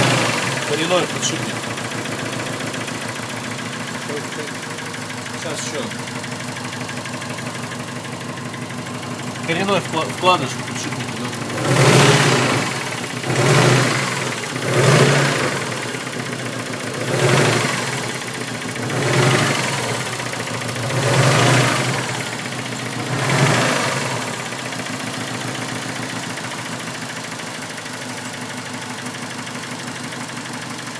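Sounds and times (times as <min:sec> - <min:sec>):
car engine revving: 0:00.0 - 0:30.8
car engine idling: 0:00.0 - 0:30.9.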